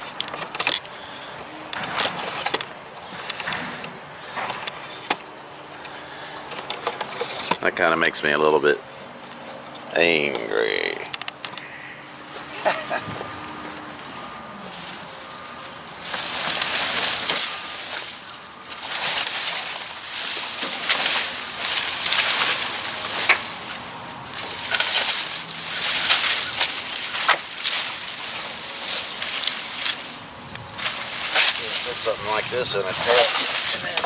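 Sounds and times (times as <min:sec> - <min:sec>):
scraping and rustling: 0:00.0 - 0:08.1, 0:08.8 - 0:34.0.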